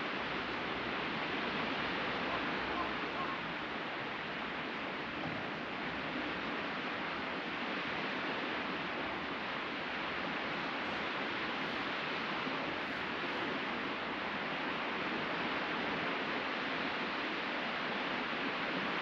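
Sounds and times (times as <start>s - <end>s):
sea surf breaking: 0.0s - 19.0s.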